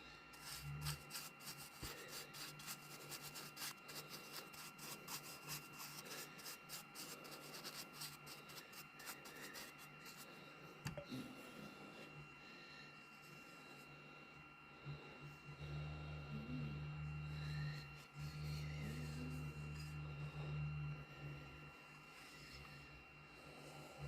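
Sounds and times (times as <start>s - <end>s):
rubbing scrapes on wooden cup: 0.0s - 10.4s, 17.3s - 20.8s.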